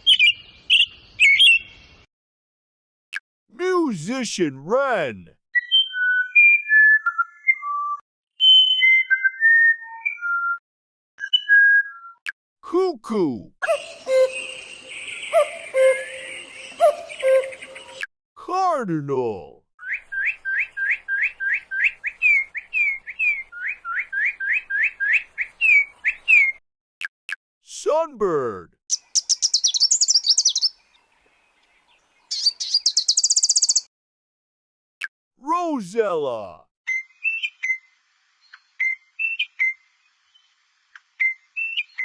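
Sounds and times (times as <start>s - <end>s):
bird singing whistled notes: 0.0s - 1.8s, 5.6s - 10.6s, 13.6s - 18.0s, 19.8s - 26.6s, 28.9s - 31.0s, 31.6s - 33.9s, 36.9s - 40.6s, 41.2s - 42.0s.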